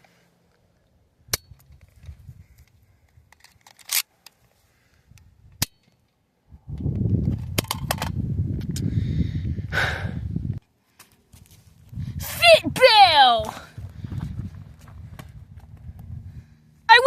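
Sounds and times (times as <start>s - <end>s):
wind rumble on microphone: 1.2s - 3.3s, 6.4s - 10.6s, 11.3s - 12.8s, 13.4s - 16.6s.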